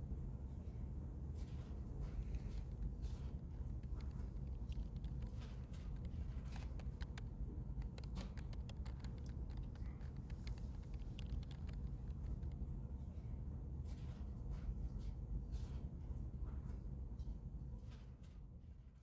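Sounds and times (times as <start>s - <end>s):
steady low rumble: 0.0s - 15.5s
light irregular clicks and ticks: 1.3s - 13.2s.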